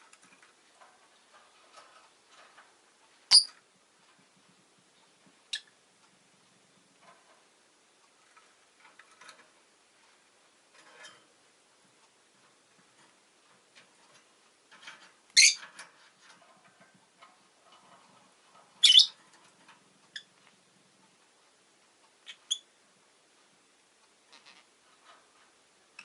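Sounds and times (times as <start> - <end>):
lovebird chirping: 3.3 - 3.6, 5.5 - 5.7, 15.4 - 15.6, 18.8 - 19.2, 22.2 - 22.7.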